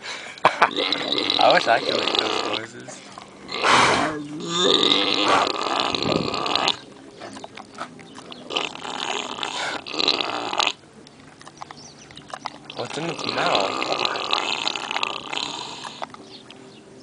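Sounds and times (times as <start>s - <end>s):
pig snoring: 0.6s - 10.8s, 12.4s - 16.2s.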